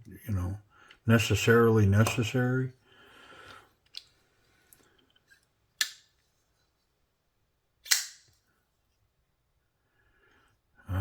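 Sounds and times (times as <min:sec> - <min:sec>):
knife blade snapping open: 0:07.8 - 0:08.3.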